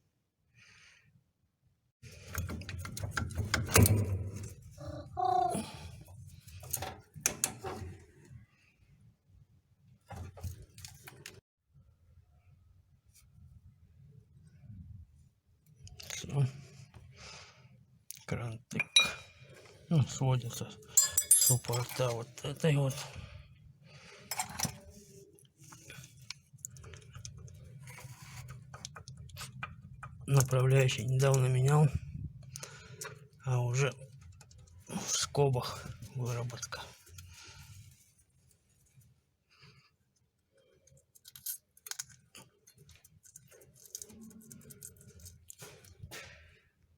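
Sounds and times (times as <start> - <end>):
light metallic clicks and clinks: 18.7 - 19.4, 21.0 - 22.1.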